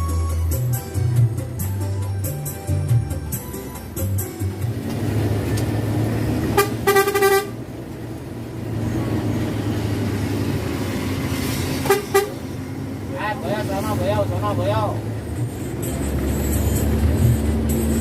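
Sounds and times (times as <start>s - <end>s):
bus engine drone: 0.0s - 18.0s
bus horn: 6.4s - 7.8s, 11.8s - 12.6s.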